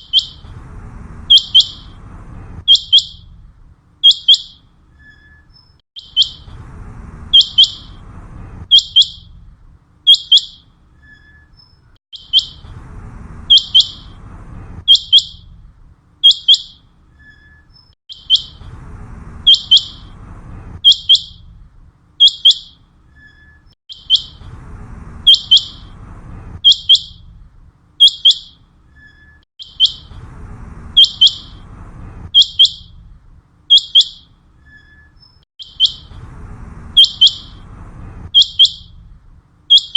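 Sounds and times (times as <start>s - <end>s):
quail calling: 19.5s - 20.1s, 25.3s - 25.9s, 31.0s - 31.6s, 32.4s - 32.9s, 33.7s - 34.3s, 35.6s - 36.1s, 37.0s - 37.6s, 38.3s - 38.9s.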